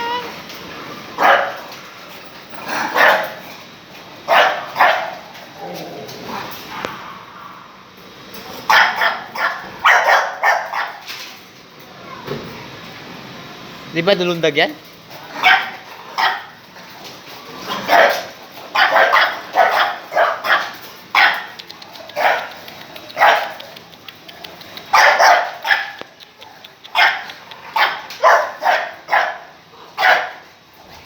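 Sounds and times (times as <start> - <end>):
dog barking: 1.2 - 1.6, 3.0 - 3.4, 4.3 - 5.2, 8.7 - 11.0, 15.4 - 16.6, 17.7 - 23.6, 24.9 - 26.0, 26.9 - 30.4.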